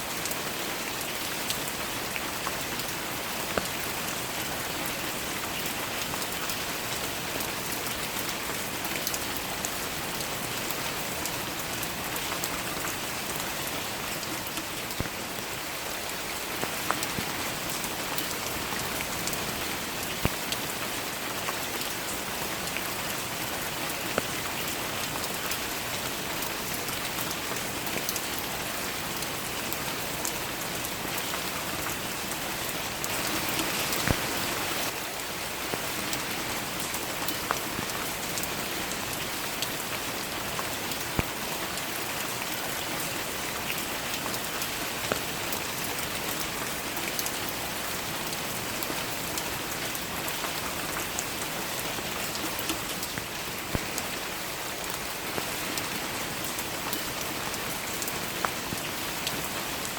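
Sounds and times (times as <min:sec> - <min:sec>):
steady rain falling: 0:00.0 - 0:59.9
single raindrops: 0:32.8 - 0:35.0.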